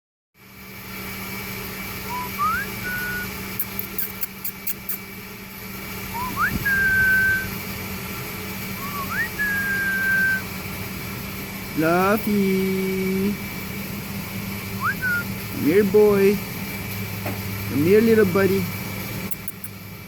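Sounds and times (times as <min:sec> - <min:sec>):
person whistling: 0:02.1 - 0:03.3, 0:06.2 - 0:07.5, 0:08.8 - 0:10.4, 0:14.8 - 0:15.3.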